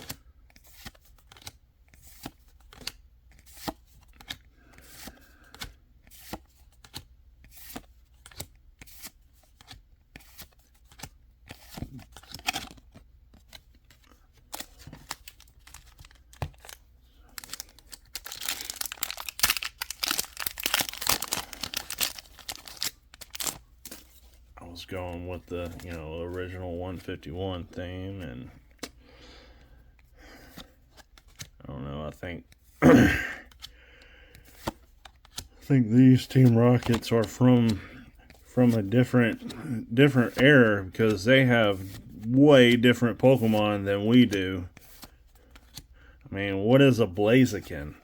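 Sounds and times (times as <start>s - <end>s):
foil wrapper tearing and crinkling: 15.6s - 23.6s
trading cards clicking: 17.4s - 24.0s.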